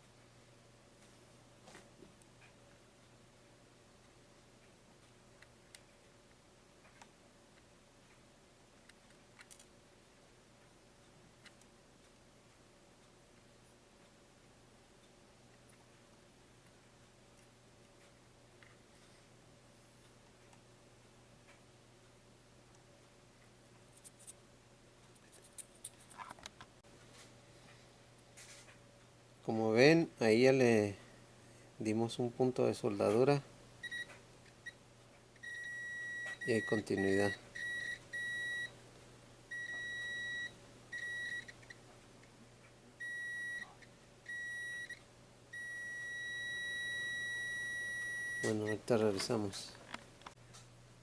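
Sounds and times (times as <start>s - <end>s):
low steady hum: 0.0s - 51.0s
faint light clicks and scratches: 25.1s - 27.8s
multimeter continuity beeps: 33.8s - 34.8s, 35.4s - 38.8s, 39.5s - 41.7s, 43.0s - 49.0s.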